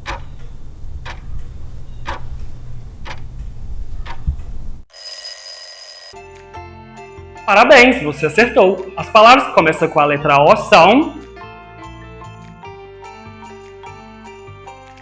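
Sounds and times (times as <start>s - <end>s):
clock ticking: 0.0s - 1.2s, 2.0s - 2.4s
bright ringing bell: 4.9s - 6.2s.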